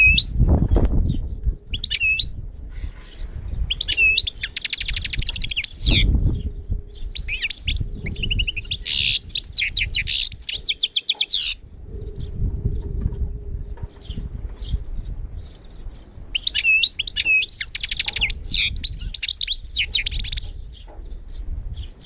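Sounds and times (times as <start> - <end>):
small birds chirping and trilling: 0.0 - 0.3, 1.1 - 13.0, 13.6 - 22.0
low rumble: 5.8 - 8.8, 11.7 - 16.3.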